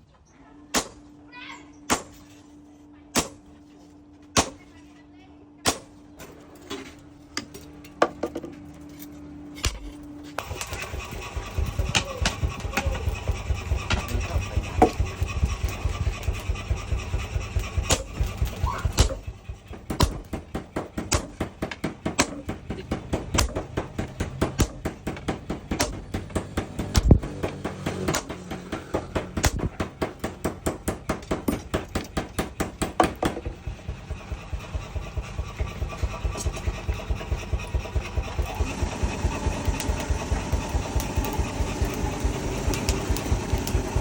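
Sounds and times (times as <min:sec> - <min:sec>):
hammer striking metal: 0:00.7 - 0:01.1, 0:01.9 - 0:02.4, 0:03.1 - 0:03.5, 0:05.6 - 0:06.0, 0:11.9 - 0:38.5.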